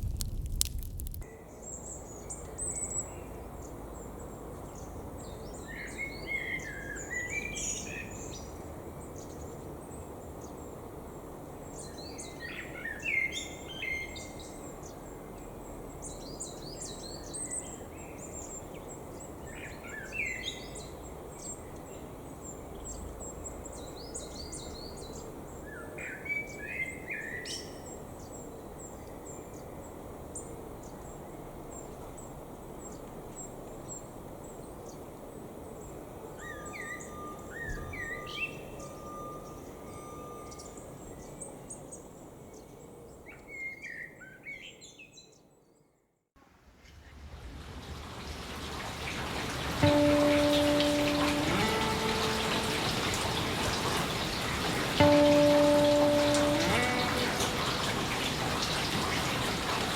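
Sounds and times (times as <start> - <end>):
background hiss: 46.4 - 59.9.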